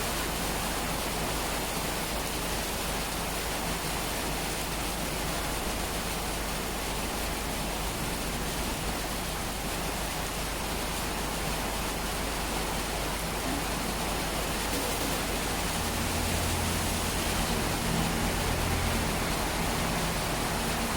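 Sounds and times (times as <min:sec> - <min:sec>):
steady rain: 0:00.0 - 0:20.9
low hum: 0:13.4 - 0:20.9.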